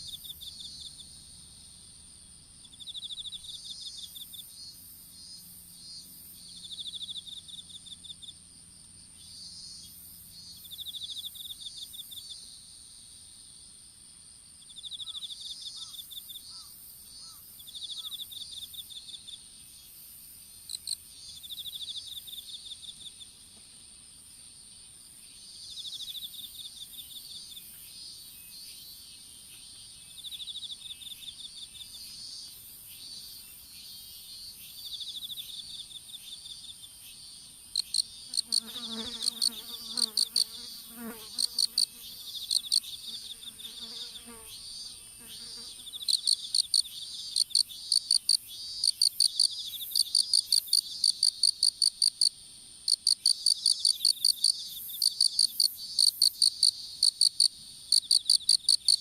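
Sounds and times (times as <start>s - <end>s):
lower pitched insect call: 0.0s - 59.0s
loud sharp insect ticks: 37.7s - 43.0s, 46.0s - 52.3s, 52.9s - 59.0s
crickets trilling: 37.7s - 52.3s
high-pitched insect whine: 37.7s - 52.3s.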